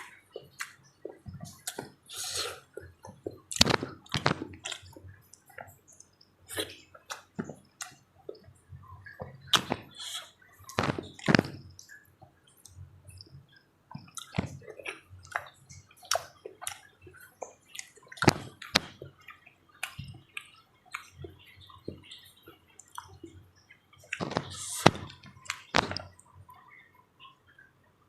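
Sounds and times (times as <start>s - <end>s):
wet chewing: 0.0s - 12.0s, 12.6s - 22.2s
mouth smacks and clicks: 0.0s - 22.2s, 22.8s - 23.4s, 24.0s - 26.8s.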